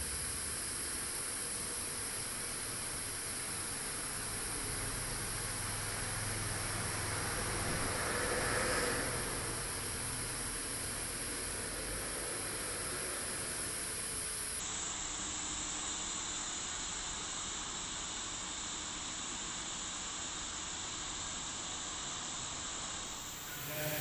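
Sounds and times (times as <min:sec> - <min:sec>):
steady hiss: 0:22.9 - 0:24.0.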